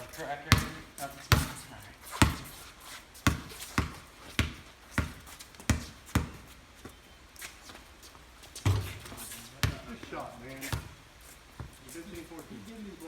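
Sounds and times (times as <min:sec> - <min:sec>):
basketball bouncing on wet court: 0:00.0 - 0:02.6, 0:03.2 - 0:06.6, 0:08.6 - 0:11.8.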